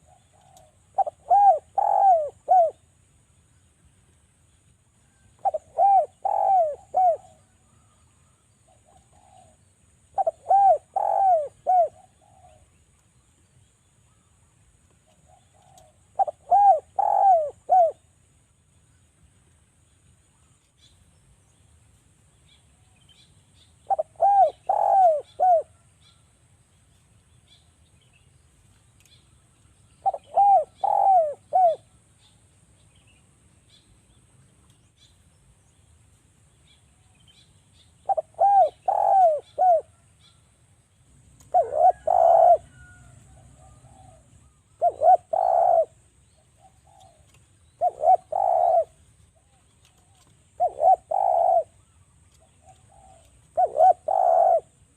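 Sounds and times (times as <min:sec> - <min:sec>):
dove cooing: 0:00.0 - 0:02.9, 0:05.4 - 0:07.9, 0:08.7 - 0:12.7, 0:15.1 - 0:18.1, 0:23.8 - 0:25.9, 0:30.0 - 0:32.0, 0:38.0 - 0:40.0, 0:41.4 - 0:54.9
small birds chirping: 0:00.0 - 0:54.9.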